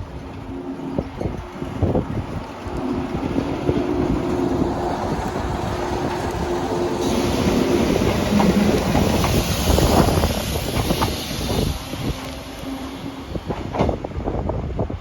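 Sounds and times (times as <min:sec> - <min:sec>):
electric train moving: 0:00.0 - 0:15.0.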